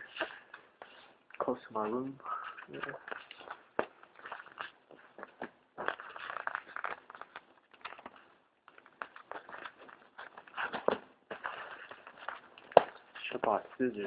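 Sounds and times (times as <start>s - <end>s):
packaging being torn and crinkled: 5.8s - 8.2s.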